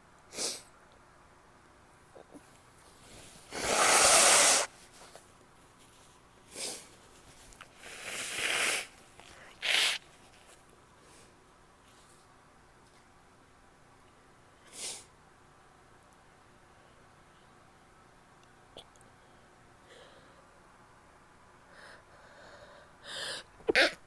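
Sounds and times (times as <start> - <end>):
woman sneezing: 3.5 - 4.7.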